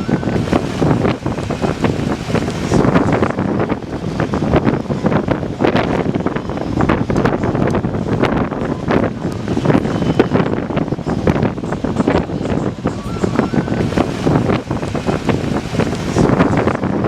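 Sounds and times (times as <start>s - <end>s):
vehicle rumble on rough road: 0.0s - 7.7s, 13.0s - 17.0s
wind buffeting microphone: 0.0s - 17.0s.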